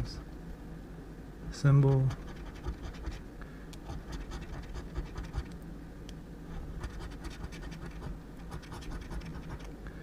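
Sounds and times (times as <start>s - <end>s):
lottery ticket being scratched: 1.8s - 3.2s, 3.9s - 5.5s, 6.6s - 9.7s.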